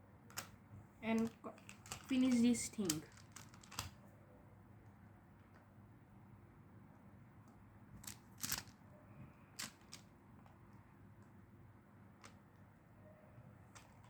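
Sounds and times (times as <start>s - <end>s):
plastic tiles clicking together: 1.1s - 3.9s.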